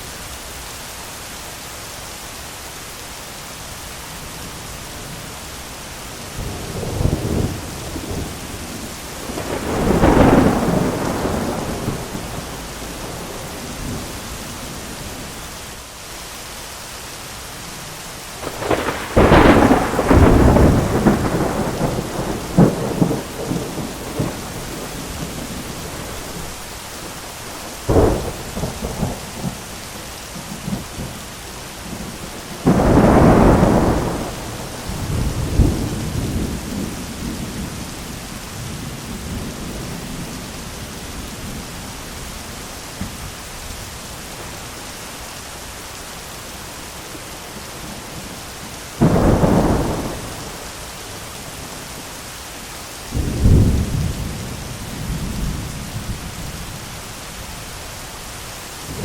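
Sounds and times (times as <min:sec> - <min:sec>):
steady rain: 0:00.0 - 0:59.0
thunder rumbling and cracking: 0:06.4 - 0:14.8, 0:18.4 - 0:26.7, 0:27.4 - 0:29.8, 0:31.8 - 0:41.7, 0:49.0 - 0:51.7, 0:53.1 - 0:57.0.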